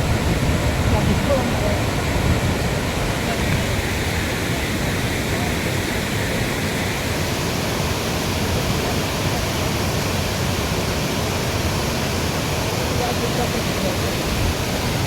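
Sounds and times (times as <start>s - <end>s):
floodwater rushing: 0.0s - 15.0s.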